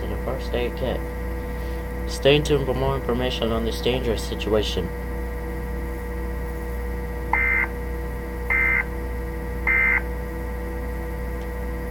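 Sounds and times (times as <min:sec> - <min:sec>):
steady low hum: 0:00.0 - 0:11.9.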